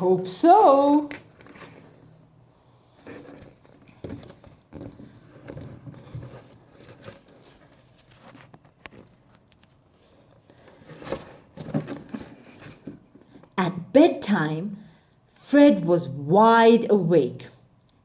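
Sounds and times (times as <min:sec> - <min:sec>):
book pages turning: 0:00.4 - 0:02.2, 0:03.0 - 0:13.4.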